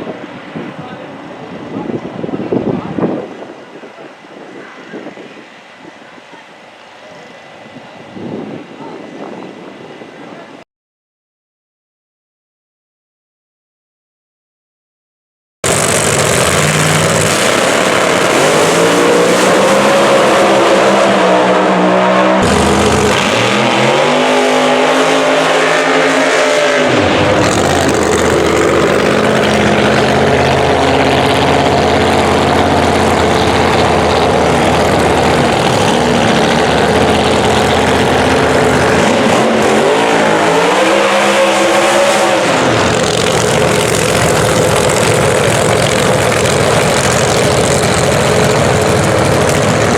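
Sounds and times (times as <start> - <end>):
drag racing engine revving: 15.6 - 49.9.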